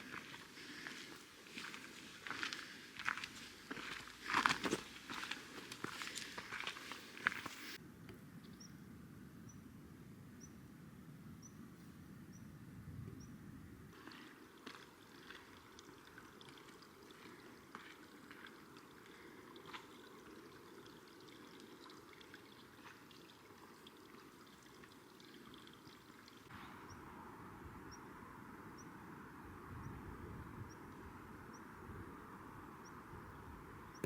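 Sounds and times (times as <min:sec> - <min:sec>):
distant running water: 0:00.0 - 0:07.8, 0:13.9 - 0:29.2.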